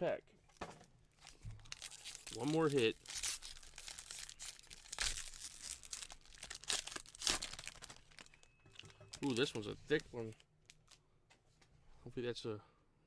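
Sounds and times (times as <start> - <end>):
plastic foil wrapper tearing: 1.2 - 11.0.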